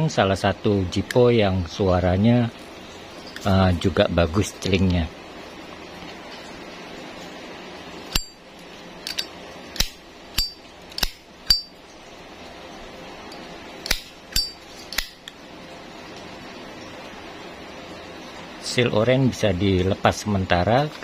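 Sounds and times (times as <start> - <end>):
metallic ringing ping: 8.1 - 8.5, 10.4 - 10.7, 11.4 - 11.8, 14.3 - 14.7
lighter lid clicking open and shut: 9.1 - 11.6, 13.8 - 15.4.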